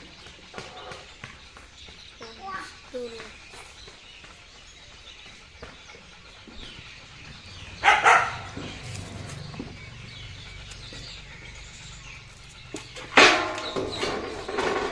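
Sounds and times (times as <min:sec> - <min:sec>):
dog barking: 0:07.8 - 0:08.7.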